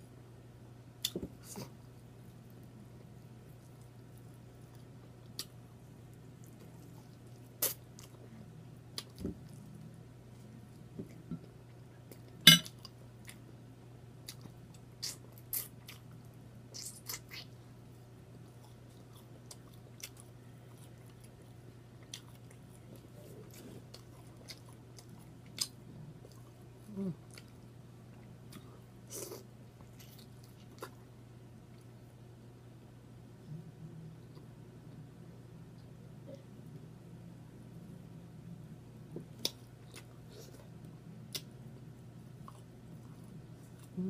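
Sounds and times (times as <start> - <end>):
chewing and lip-smacking: 18.5 - 26.6, 39.3 - 41.6, 42.2 - 44.0
person humming mm: 26.9 - 27.2.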